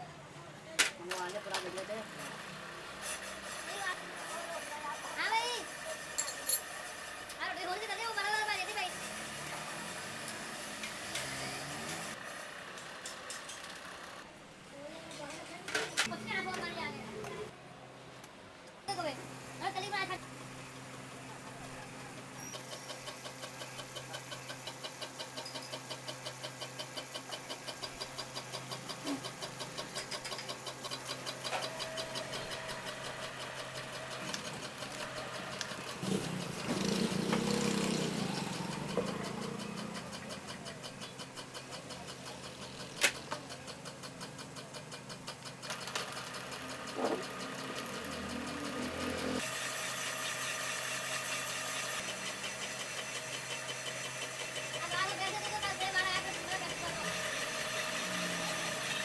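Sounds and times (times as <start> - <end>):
engine running: 19.1 - 59.0.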